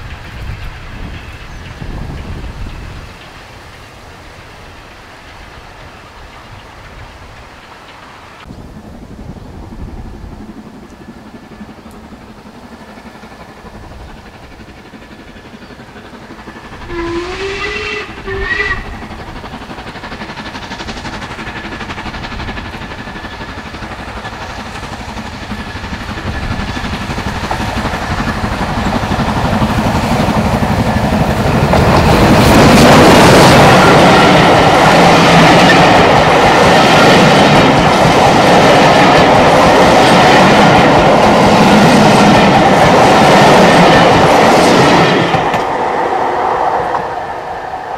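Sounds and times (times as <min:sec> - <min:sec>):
train passing rumble: 0:00.0 - 0:47.9
wheels clacking over rail joints: 0:10.3 - 0:47.3
steam locomotive whistle: 0:16.8 - 0:19.2.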